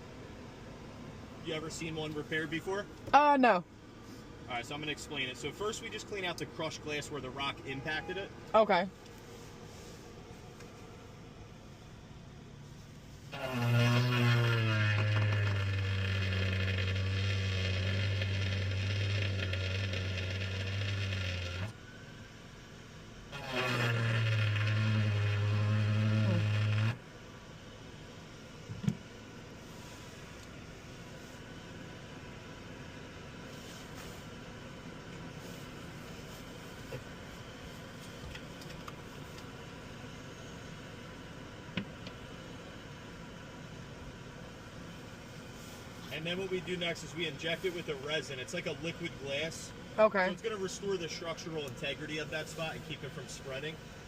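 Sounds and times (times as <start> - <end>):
car running hum: 0.0 - 54.0
heater fan: 0.0 - 54.0
small power drill humming: 13.3 - 21.8, 23.3 - 27.0.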